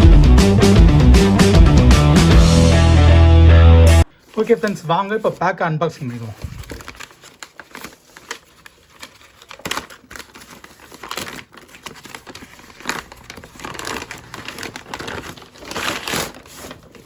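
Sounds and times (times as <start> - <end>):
packaging crinkling: 4.2 - 17.0.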